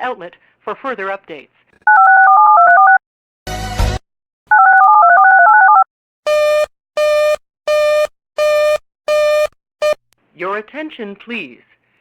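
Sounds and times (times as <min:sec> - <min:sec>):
telephone busy signal beep: 0:01.9 - 0:03.0, 0:04.5 - 0:10.0
touch-tone dialing tones: 0:01.9 - 0:03.0, 0:04.5 - 0:05.9.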